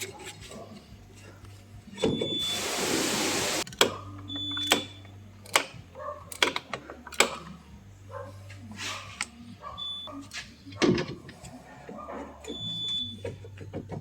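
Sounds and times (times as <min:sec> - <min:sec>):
short high beep: 0:02.2 - 0:02.7.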